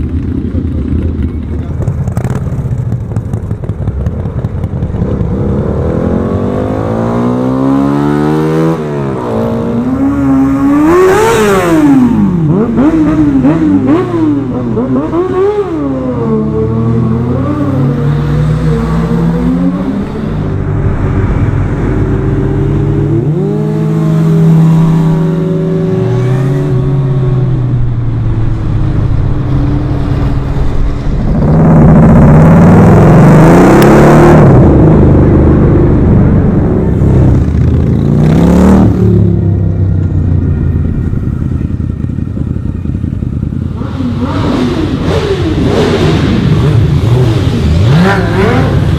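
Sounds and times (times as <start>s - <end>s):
motorcycle engines revving: 0.0s - 48.9s
rushing noise: 17.8s - 42.6s.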